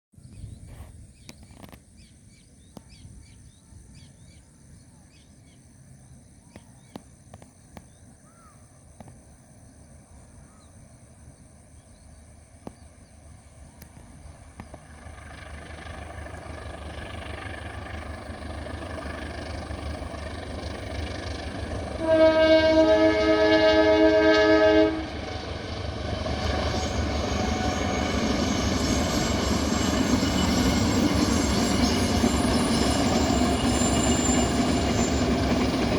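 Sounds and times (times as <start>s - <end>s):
train rumble: 10.9s - 35.9s
locomotive multi-tone horn: 22.0s - 25.5s, 26.3s - 28.4s.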